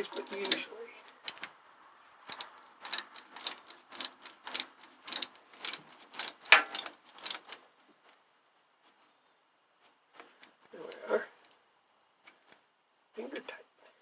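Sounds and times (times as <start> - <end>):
ratchet wrench clicking: 2.3 - 7.5.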